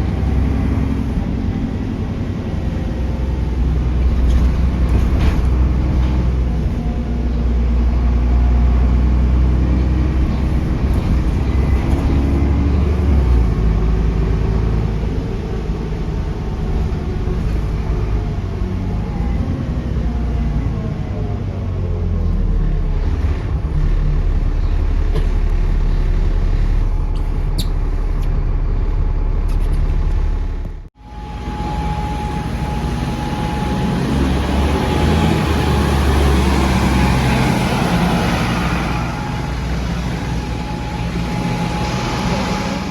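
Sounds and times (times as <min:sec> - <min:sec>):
diesel bus engine running: 0:00.0 - 0:42.9
turbocharger whistle: 0:38.8 - 0:42.9.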